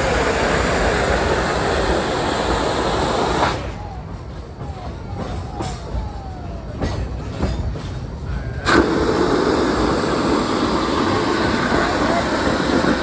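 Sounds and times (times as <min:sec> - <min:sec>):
loud rushing noise: 0:00.0 - 0:04.0, 0:08.6 - 0:13.0
steam train rumble: 0:00.0 - 0:13.0.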